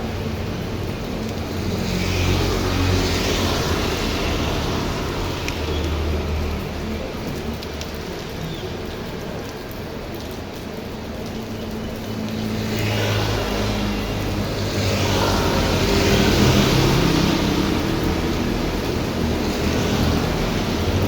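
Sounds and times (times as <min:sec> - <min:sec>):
heavy rain: 0:00.0 - 0:21.0
vehicle passing on wet road: 0:00.0 - 0:21.0.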